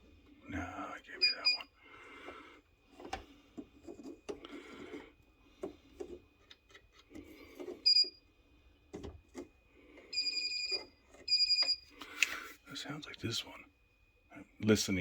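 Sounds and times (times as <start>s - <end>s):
voltage tester beep: 7.9s - 8.2s, 10.2s - 11.8s.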